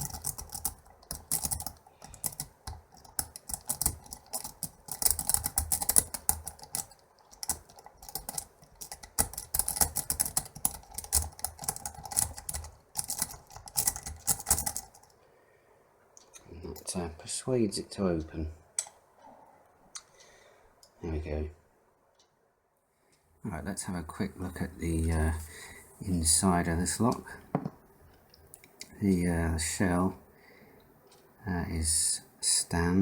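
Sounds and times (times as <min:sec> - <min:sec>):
lock pins clicking and rattling: 0:00.0 - 0:15.2.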